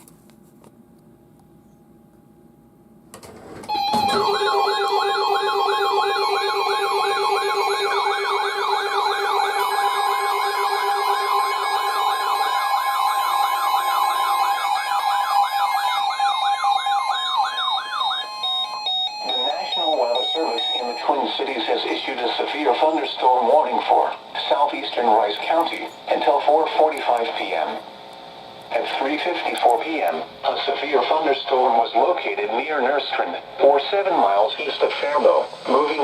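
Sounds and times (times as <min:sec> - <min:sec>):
warbling siren alarm: 0:03.7 - 0:23.8
steady alert tones: 0:03.7 - 0:24.0.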